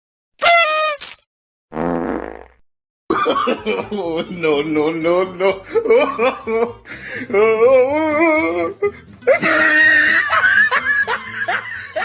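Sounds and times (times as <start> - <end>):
loud high-pitched laugh: 9.3 - 12.0.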